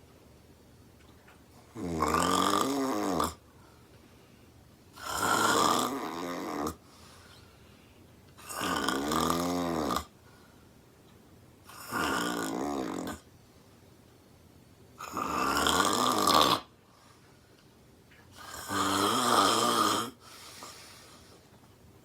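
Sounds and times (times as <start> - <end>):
woman snoring loudly: 1.8 - 3.4, 5.0 - 6.8, 8.4 - 10.1, 11.7 - 13.2, 15.0 - 16.7, 18.4 - 20.2.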